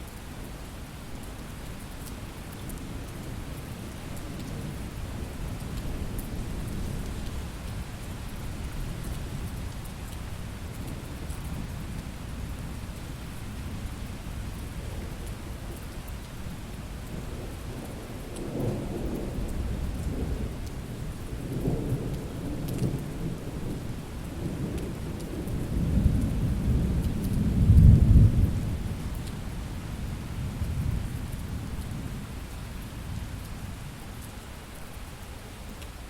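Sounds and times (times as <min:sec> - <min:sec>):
steady rain: 0:00.0 - 0:36.0
rolling thunder: 0:24.5 - 0:29.0.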